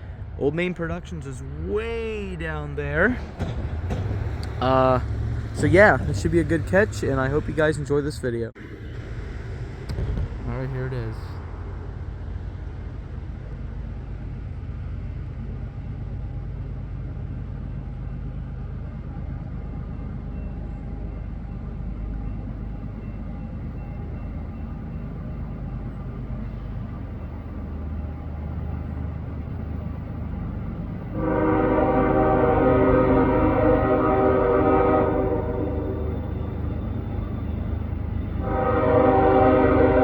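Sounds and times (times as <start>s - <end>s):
diesel locomotive rumble: 0.0s - 40.0s
train air horn chord: 31.1s - 36.3s, 38.4s - 40.0s.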